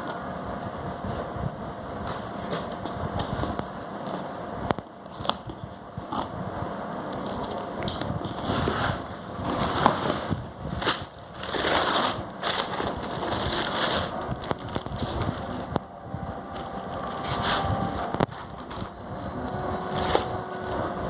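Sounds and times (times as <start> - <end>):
packaging crinkling: 9.5 - 21.0.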